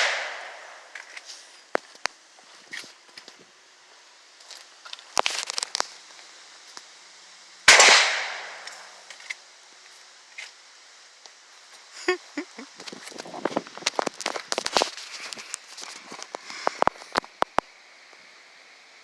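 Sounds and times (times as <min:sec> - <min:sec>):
loud gunshot: 0:00.0 - 0:00.8, 0:07.7 - 0:08.9.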